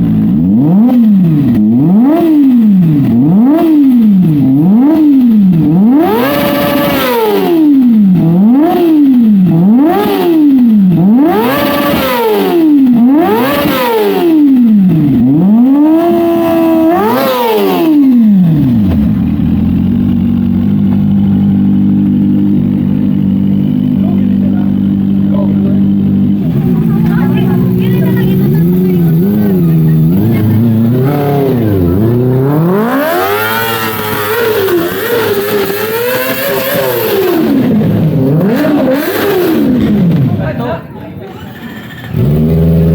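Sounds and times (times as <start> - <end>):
motorcycle engine revving: 0.0 - 42.9
motorcycle engine idling: 12.4 - 38.3.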